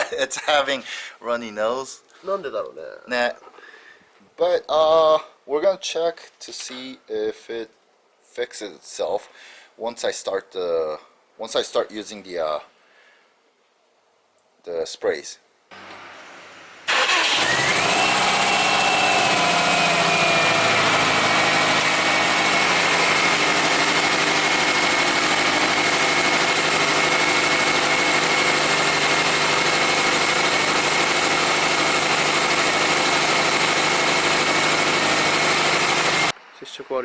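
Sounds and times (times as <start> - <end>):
car engine idling: 15.7 - 36.3.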